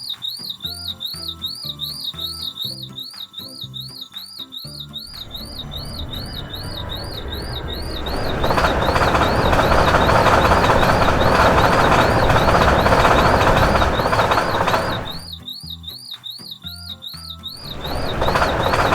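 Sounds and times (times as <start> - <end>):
level crossing warning signal: 0.4 - 15.6, 17.1 - 18.9
train rumbling past: 5.1 - 15.3, 17.6 - 18.9.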